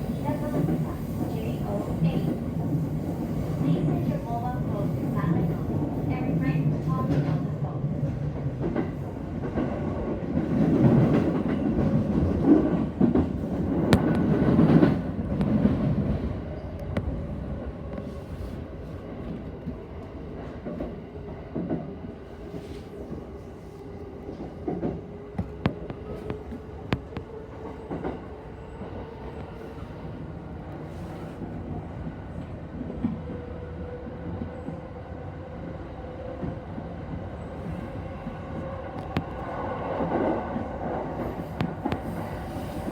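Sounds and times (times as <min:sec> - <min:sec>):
electric train running on rails: 0:00.0 - 0:42.9.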